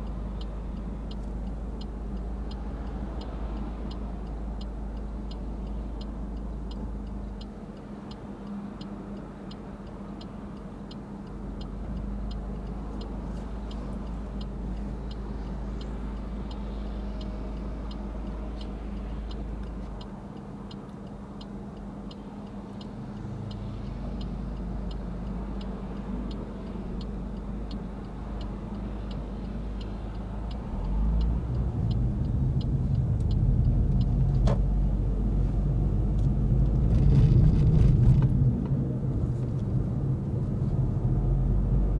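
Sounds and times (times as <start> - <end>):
turn signal ticking: 0.0 - 41.9
car engine running: 24.0 - 40.7.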